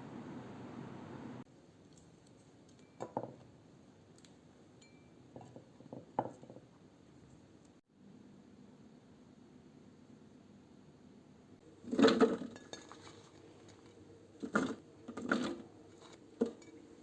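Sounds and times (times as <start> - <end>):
glass jar and utensils clinking: 4.8 - 5.6, 11.9 - 13.4.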